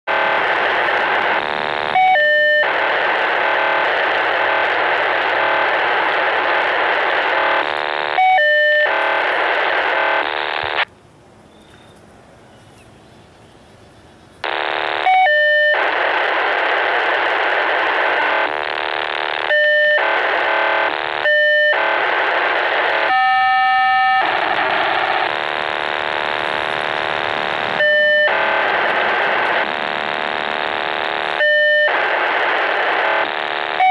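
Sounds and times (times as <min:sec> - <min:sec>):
radio data signal hiss: 0:00.1 - 0:10.9, 0:14.3 - 0:33.9
faint radio hiss: 0:00.1 - 0:33.9
steady beeping tones: 0:23.0 - 0:31.9.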